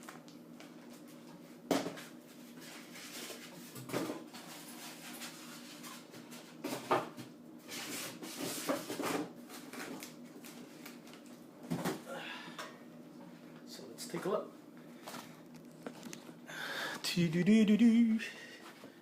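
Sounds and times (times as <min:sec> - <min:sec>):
steady low hum: 0:10.2 - 0:19.0.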